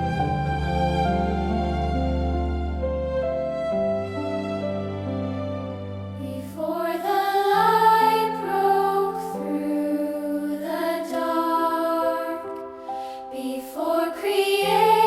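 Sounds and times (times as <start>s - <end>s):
piano and pad chords: 0.0s - 15.0s
wordless vocal line: 6.2s - 15.0s.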